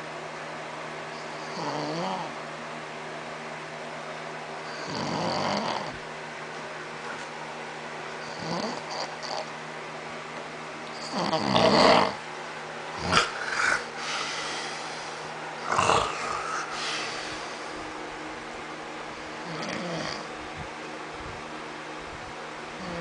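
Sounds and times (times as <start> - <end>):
man snoring: 1.4 - 2.3, 4.7 - 6.0, 8.3 - 9.5, 11.0 - 12.2, 13.0 - 17.6, 19.4 - 20.3, 22.8 - 23.0
sharp snort: 13.0 - 17.5.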